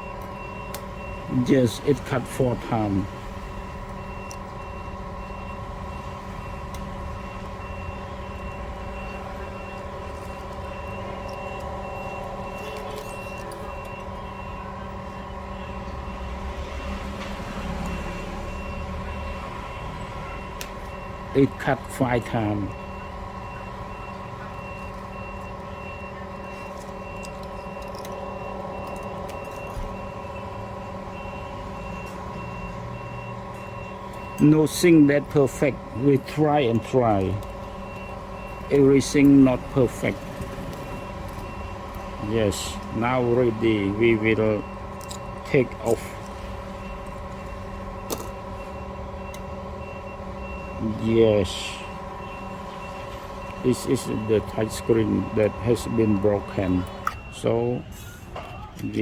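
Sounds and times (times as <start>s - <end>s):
electrical hum: 0.0s - 59.0s
high electronic beeps: 17.7s - 59.0s.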